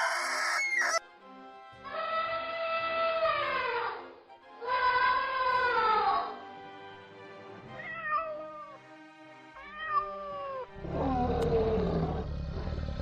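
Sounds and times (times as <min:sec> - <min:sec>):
cat meowing: 0:00.0 - 0:01.0, 0:07.8 - 0:08.8, 0:09.6 - 0:10.7
rough animal call: 0:00.0 - 0:01.0
quiet background music: 0:00.6 - 0:13.0.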